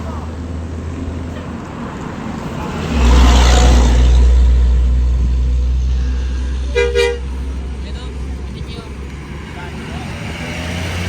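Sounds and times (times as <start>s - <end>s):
diesel bus engine rumbling: 0.0s - 11.0s
horn toot: 6.0s - 7.7s.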